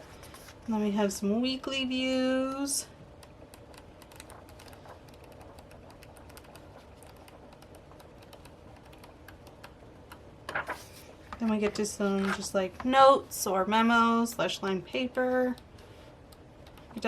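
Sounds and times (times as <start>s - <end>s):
paper pages turning: 10.5s - 13.0s.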